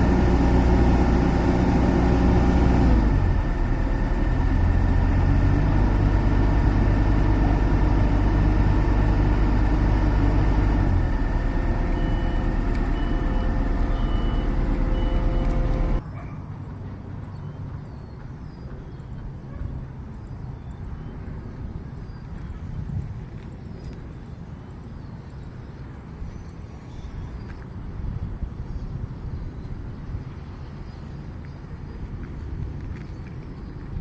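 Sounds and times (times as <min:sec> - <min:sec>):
diesel engine rumbling: 0:00.0 - 0:24.9
short beeps: 0:11.9 - 0:15.9.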